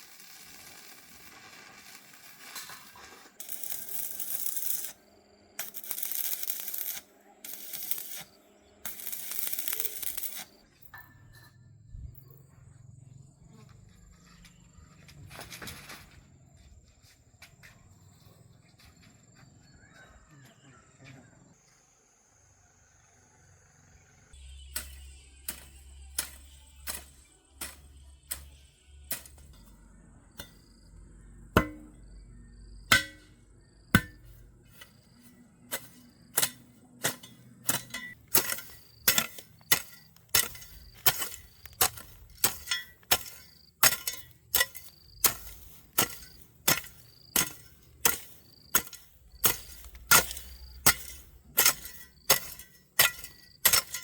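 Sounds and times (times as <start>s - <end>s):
hand tool striking: 5.6s - 11.1s, 24.7s - 29.8s, 30.4s - 30.6s, 31.6s - 32.0s, 32.9s - 54.0s.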